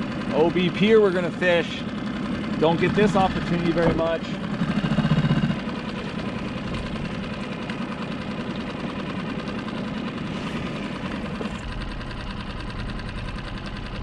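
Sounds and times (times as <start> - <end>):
outboard motor running: 0.0 - 14.0.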